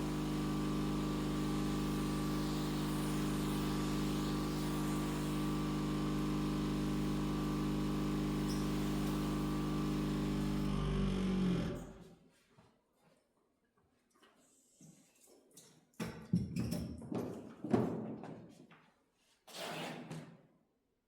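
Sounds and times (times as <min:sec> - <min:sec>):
motor-driven machine humming: 0:00.0 - 0:12.0.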